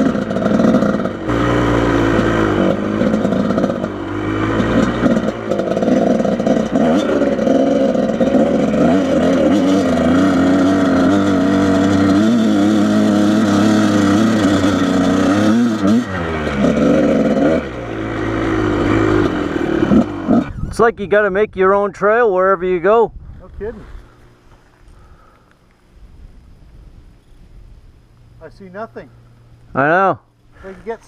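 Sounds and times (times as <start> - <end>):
dirt bike engine revving: 0.0 - 20.8.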